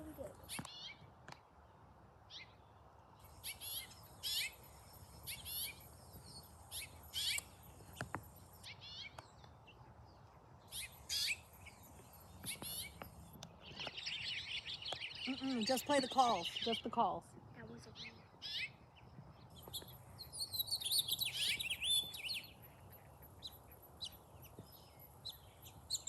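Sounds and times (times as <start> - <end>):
finch chirps played back: 3.3 - 9.4, 10.7 - 18.8, 19.5 - 22.6.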